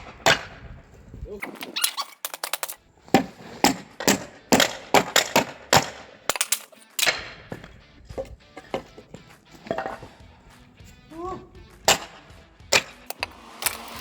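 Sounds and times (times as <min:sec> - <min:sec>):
hand tool striking wooden boards: 0:01.5 - 0:10.1, 0:11.8 - 0:14.0.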